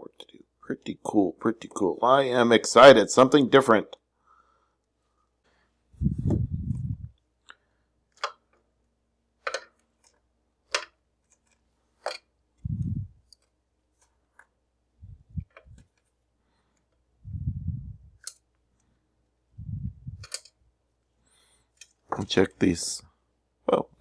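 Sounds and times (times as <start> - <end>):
low thuds: 6.0 - 7.1, 15.0 - 15.8
small parts clicking and tapping: 9.4 - 12.3, 20.2 - 20.6.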